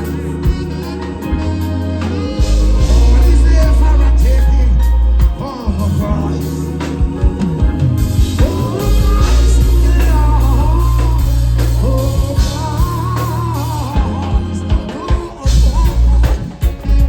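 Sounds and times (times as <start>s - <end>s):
lead singer: 0.0s - 17.0s
live reggae band playing: 0.0s - 17.0s.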